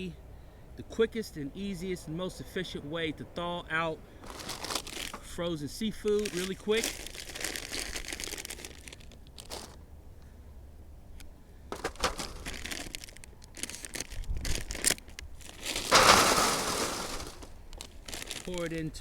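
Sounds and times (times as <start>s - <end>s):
packaging crinkling: 4.2s - 5.3s, 6.0s - 9.8s, 11.7s - 18.7s.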